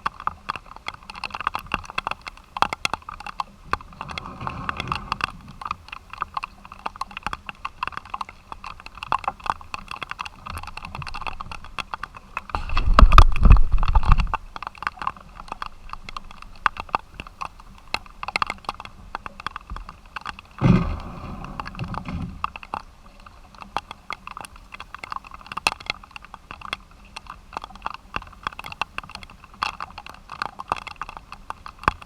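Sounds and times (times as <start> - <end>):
rain ticking: 0.0 - 32.0
wind rumble on microphone: 3.6 - 6.5, 9.7 - 14.7, 20.6 - 22.6.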